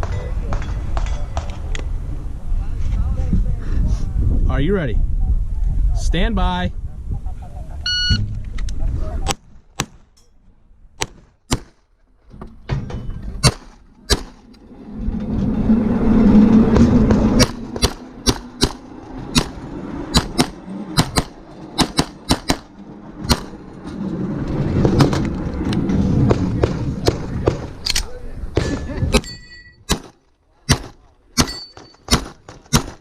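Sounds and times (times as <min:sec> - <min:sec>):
pistol shots: 0:11.0 - 0:11.8, 0:20.2 - 0:22.6, 0:29.9 - 0:33.0.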